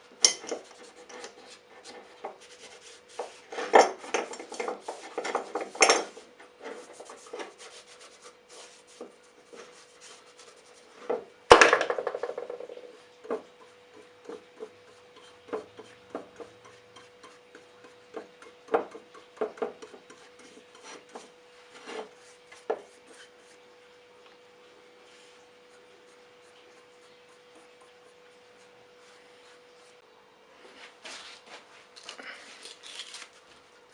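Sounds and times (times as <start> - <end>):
hand rubbing and scraping: 0.0 - 11.3, 11.9 - 23.8.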